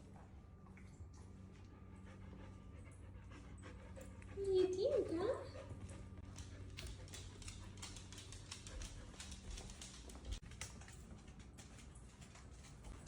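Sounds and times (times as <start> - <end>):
faint low hum: 0.0 - 13.0
dog claws clicking on hard floor: 6.2 - 13.0.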